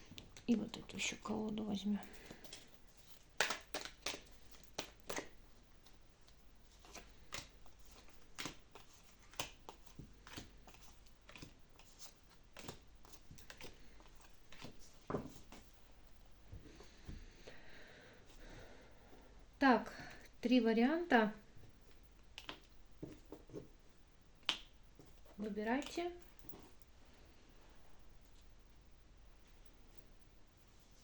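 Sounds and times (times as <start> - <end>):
cards being shuffled: 2.2 - 5.4, 6.7 - 15.7.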